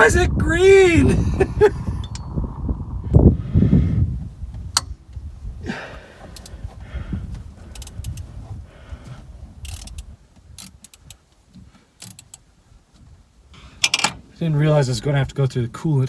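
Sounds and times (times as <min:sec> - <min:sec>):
low rumble: 0:00.0 - 0:07.6
metal tools clinking and rattling: 0:13.8 - 0:14.2.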